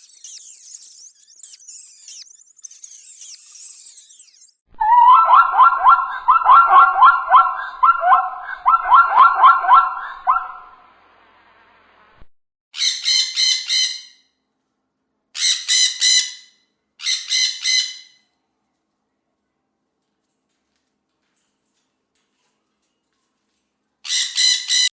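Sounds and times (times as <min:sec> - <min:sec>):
harsh squawking: 0:00.0 - 0:10.7
sharp repeated bird-like calls: 0:00.0 - 0:10.7.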